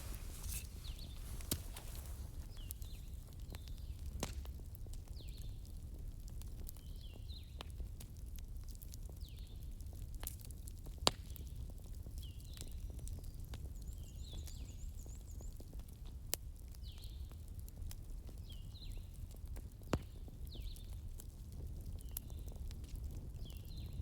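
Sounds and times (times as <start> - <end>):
wood fire crackling: 0.0 - 5.0.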